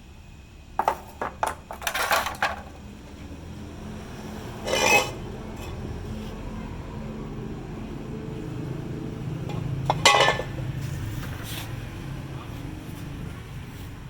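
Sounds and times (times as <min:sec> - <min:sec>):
metal clinking and knocking: 0:00.8 - 0:02.8, 0:09.5 - 0:10.6.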